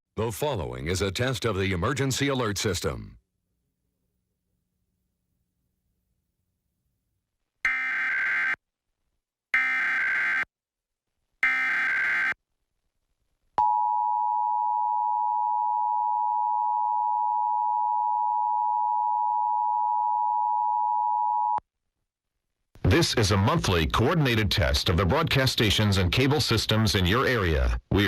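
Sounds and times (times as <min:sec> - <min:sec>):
two-tone alarm: 0:07.6 - 0:08.6, 0:09.6 - 0:10.5, 0:11.4 - 0:12.4, 0:13.6 - 0:21.6.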